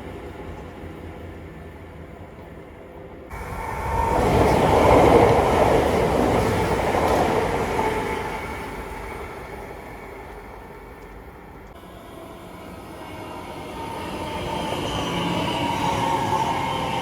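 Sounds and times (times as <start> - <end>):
train wheels rumbling on rails: 0.0 - 11.8.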